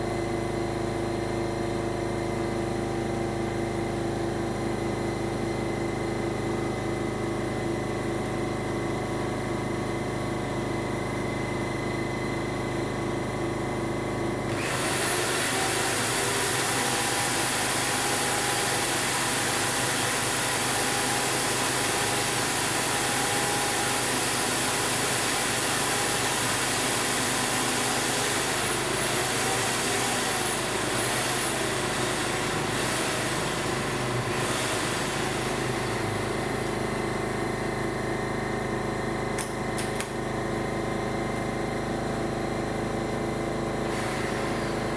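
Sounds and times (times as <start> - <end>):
steady machine hum: 7.6 - 43.1.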